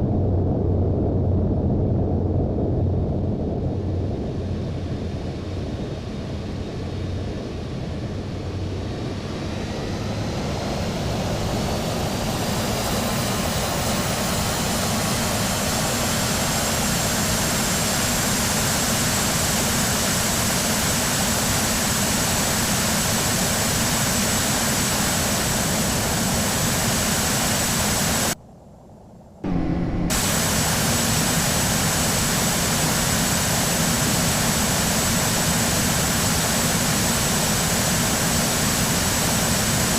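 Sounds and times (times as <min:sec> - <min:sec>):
high engine whine: 0:00.0 - 0:28.4, 0:29.4 - 0:39.9
jet engines running: 0:01.7 - 0:28.4, 0:29.4 - 0:39.9
dense rushing noise: 0:29.4 - 0:39.9.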